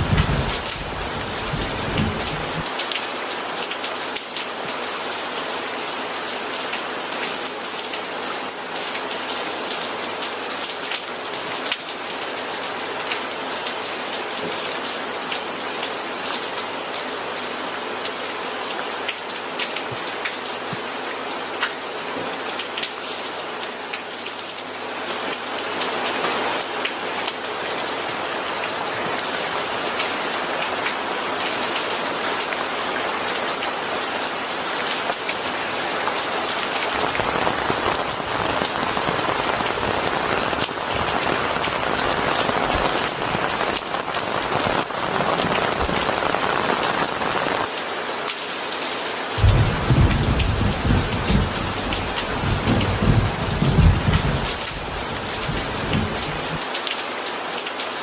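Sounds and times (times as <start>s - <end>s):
low rumble of thunder: 0.0s - 2.7s, 49.4s - 56.6s
heavy rain pattering: 0.0s - 58.0s.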